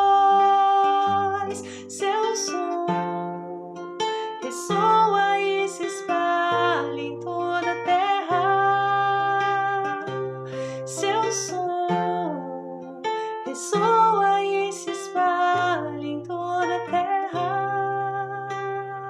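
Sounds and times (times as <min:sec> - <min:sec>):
instrumental music with sustained chords: 0:00.0 - 0:19.0.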